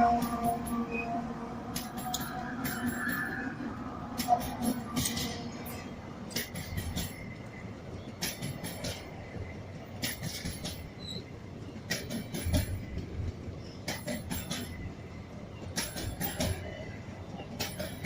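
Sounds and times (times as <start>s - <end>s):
wheels clicking over rail joints: 1.7s - 3.4s, 4.1s - 18.0s.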